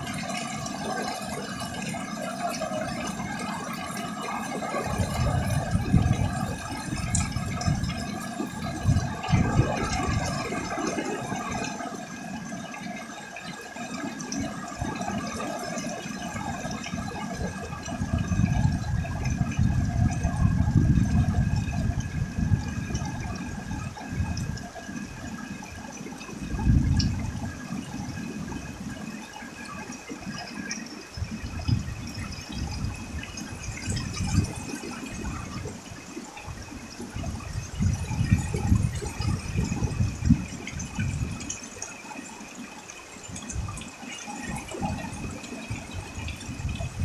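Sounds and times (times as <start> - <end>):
heavy rain pouring: 0.0 - 47.0
wind gusts on microphone: 4.6 - 11.8, 16.4 - 29.1, 31.1 - 41.6, 43.3 - 47.0.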